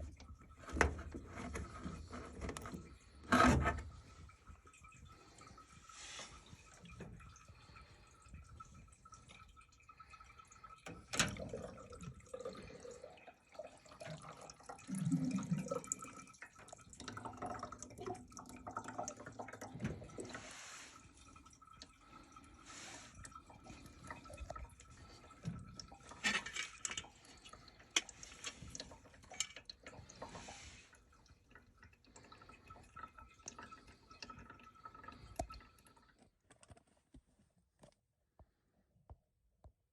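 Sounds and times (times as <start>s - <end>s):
clicks and knocks from hoses: 0.0s - 4.8s, 10.6s - 12.2s, 23.6s - 30.5s
water dripping and splashing: 0.0s - 36.4s.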